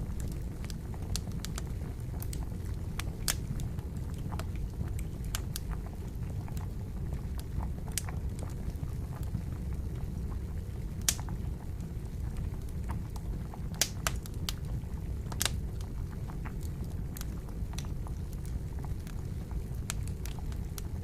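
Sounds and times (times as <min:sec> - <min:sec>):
campfire crackling: 0:00.0 - 0:21.0
water bubbling at a boil: 0:00.0 - 0:21.0
sharp fire pops: 0:13.7 - 0:14.4.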